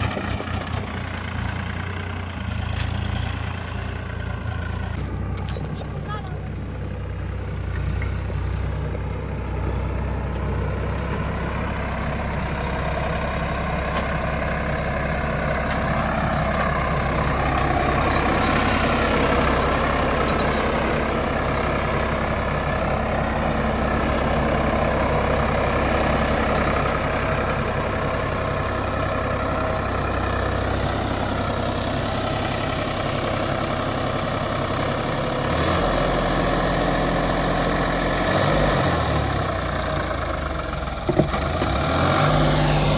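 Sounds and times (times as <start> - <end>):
diesel engine running: 0.0 - 42.9.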